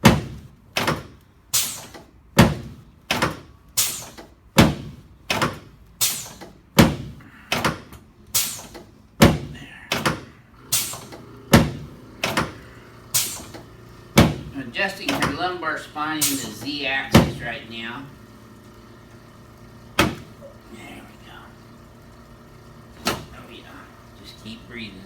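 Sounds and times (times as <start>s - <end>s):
adjusting table clacking: 1.8s - 17.6s, 20.0s - 20.6s, 23.0s - 23.4s.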